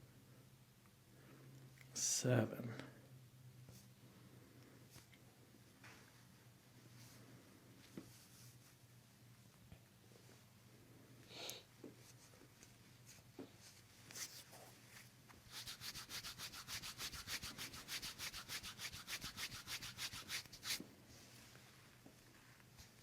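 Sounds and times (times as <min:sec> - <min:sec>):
hands rubbing briskly: 0:15.5 - 0:20.8.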